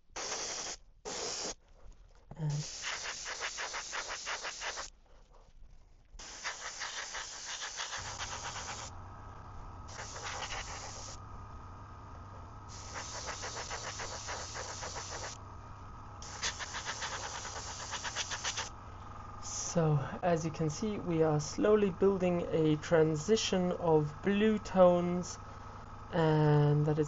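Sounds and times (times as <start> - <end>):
airbrush spraying hissing air: 0.0 - 1.6, 2.4 - 4.9, 6.2 - 9.0, 9.8 - 11.2, 12.7 - 15.4, 16.2 - 18.7.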